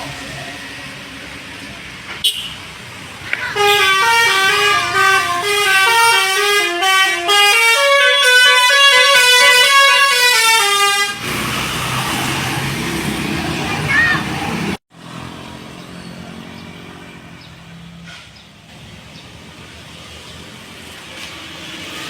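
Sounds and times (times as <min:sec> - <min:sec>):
bus musical horn melody: 0:03.5 - 0:11.2.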